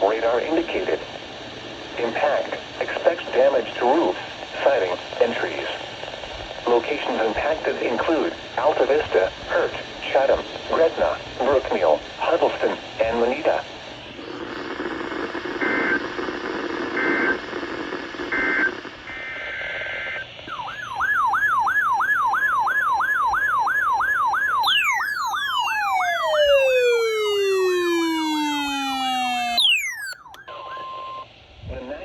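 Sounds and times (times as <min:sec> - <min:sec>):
radio static: 0:00.0 - 0:20.9, 0:24.5 - 0:32.0
warbling electronic siren: 0:18.2 - 0:31.3
tone sweeping down in pitch: 0:24.4 - 0:31.2
screeching digital data tones: 0:24.6 - 0:31.3.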